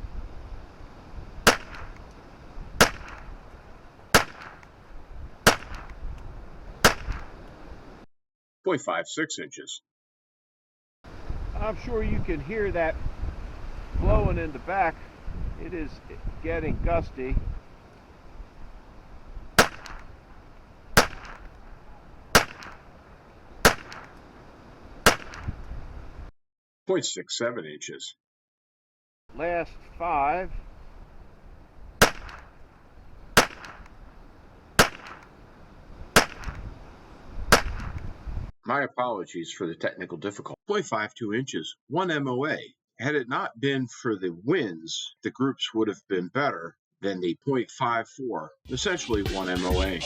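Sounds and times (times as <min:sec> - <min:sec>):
wind rumbling on microphone: 0:00.0 - 0:08.0, 0:11.1 - 0:26.3, 0:29.3 - 0:38.5
rifle shots: 0:01.4 - 0:02.0, 0:02.8 - 0:03.4, 0:04.1 - 0:04.7, 0:05.4 - 0:06.0, 0:06.8 - 0:07.4, 0:19.6 - 0:20.1, 0:20.9 - 0:21.6, 0:22.3 - 0:23.0, 0:23.6 - 0:24.2, 0:25.0 - 0:25.6, 0:32.0 - 0:32.6, 0:33.4 - 0:33.9, 0:34.8 - 0:35.3, 0:36.1 - 0:36.6, 0:37.5 - 0:38.0.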